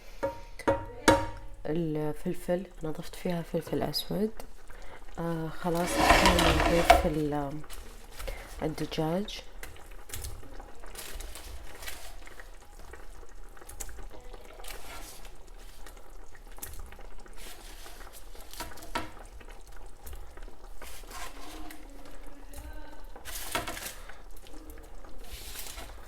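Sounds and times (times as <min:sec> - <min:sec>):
stirring in a pot: 0:02.4 - 0:26.0.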